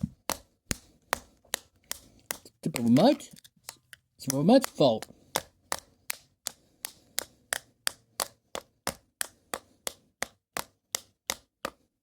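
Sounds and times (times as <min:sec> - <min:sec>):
sharp clicks or taps: 0:00.0 - 0:11.8.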